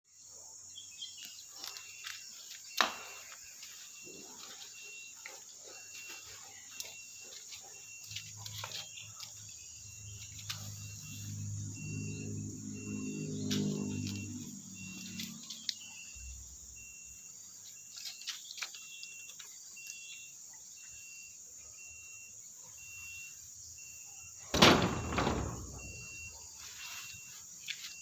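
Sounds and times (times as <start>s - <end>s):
insects chirping: 0.1s - 28.0s.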